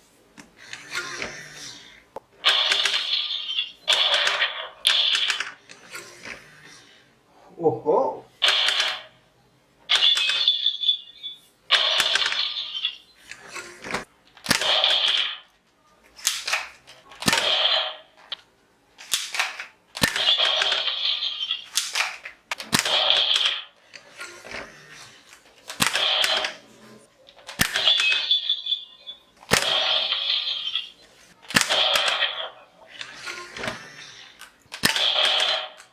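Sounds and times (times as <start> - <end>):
plastic toy target being hit: 2.5 - 5.5, 8.4 - 9.1, 14.4 - 15.4, 16.2 - 18.4, 19.0 - 23.7, 25.7 - 26.6, 27.5 - 28.3, 29.4 - 30.9, 31.5 - 33.9, 34.7 - 35.9.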